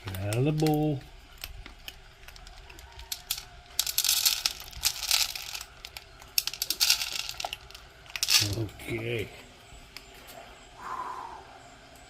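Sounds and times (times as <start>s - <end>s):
cat food rattling into bowls: 0.0s - 9.0s.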